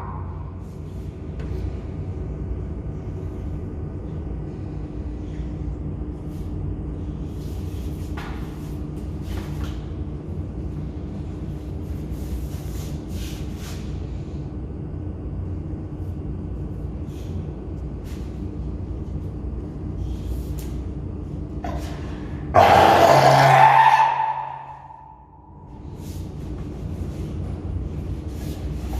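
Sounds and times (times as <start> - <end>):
low background hum: 0.0 - 28.9
fur seal harsh call: 22.6 - 25.0.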